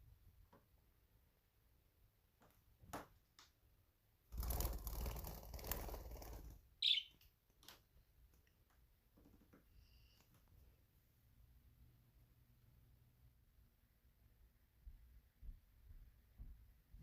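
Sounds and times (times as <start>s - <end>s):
rustling like fluttering wings: 4.3s - 7.0s
budgie chirp: 6.8s - 7.2s.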